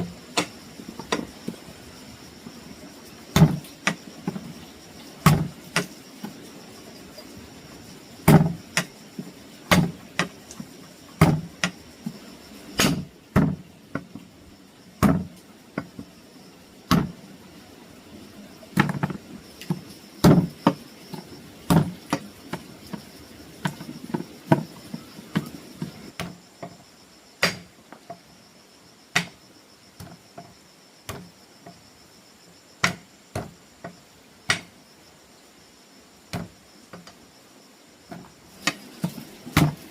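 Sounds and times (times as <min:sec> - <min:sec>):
high-pitched insect drone: 0:00.0 - 0:13.3, 0:14.2 - 0:32.8
sharp knocks on solid surface: 0:05.2 - 0:05.9, 0:08.3 - 0:08.9, 0:32.8 - 0:34.7.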